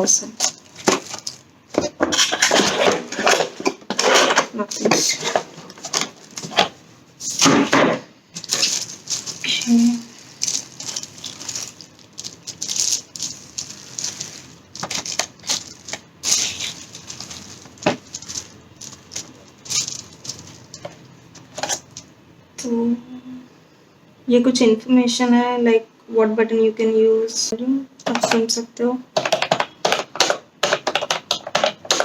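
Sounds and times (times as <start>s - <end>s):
packaging rustling: 0.2s - 7.7s, 8.3s - 22.1s, 29.3s - 32.0s.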